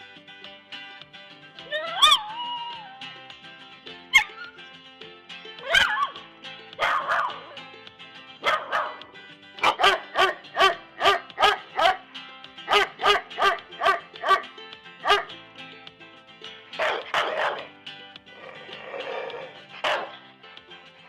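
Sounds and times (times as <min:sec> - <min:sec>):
background music: 0:00.0 - 0:21.0
dog barking: 0:06.8 - 0:07.4, 0:08.4 - 0:09.0, 0:09.6 - 0:12.0, 0:12.7 - 0:14.4, 0:15.0 - 0:15.3, 0:16.8 - 0:17.7, 0:19.8 - 0:20.2.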